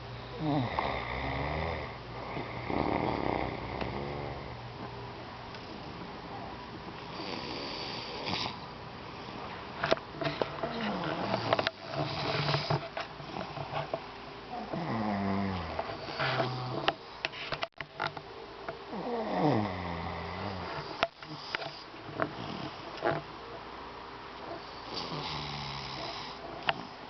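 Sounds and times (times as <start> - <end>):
person snoring: 0.3 - 4.6, 7.1 - 8.6, 10.7 - 12.8, 14.5 - 16.9, 18.9 - 22.8, 24.8 - 27.0.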